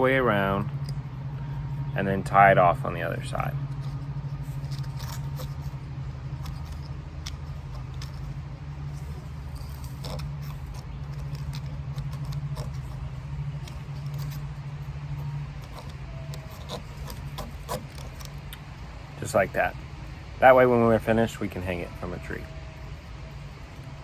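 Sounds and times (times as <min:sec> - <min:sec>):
string scratching on pine cone: 0:00.0 - 0:18.5
steady low hum: 0:00.0 - 0:24.0.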